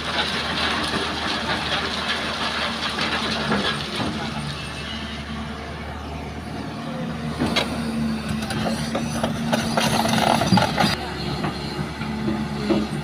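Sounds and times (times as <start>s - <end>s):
excavator knocks and clanks: 0.0s - 4.7s, 7.3s - 13.0s
excavator diesel engine running: 0.0s - 13.0s.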